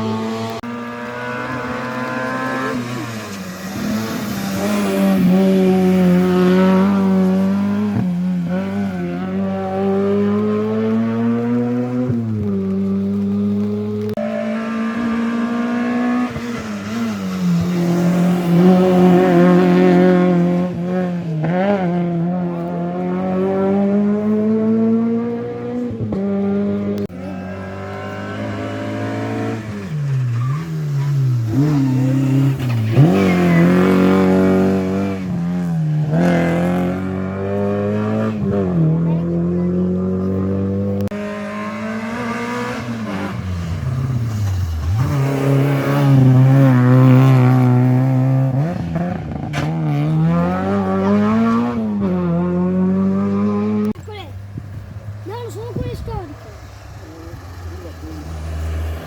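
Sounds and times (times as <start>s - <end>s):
rally car engine revving: 0.0s - 59.0s
tyre squeal: 29.6s - 34.2s.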